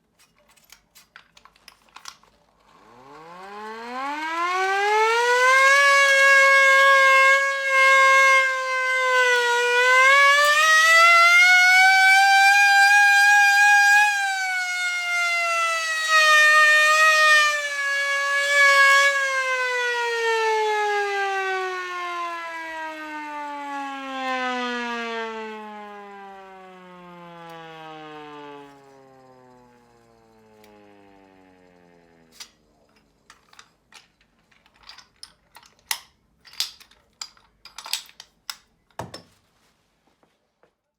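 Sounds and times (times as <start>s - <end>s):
mechanical siren winding down: 1.5s - 33.7s.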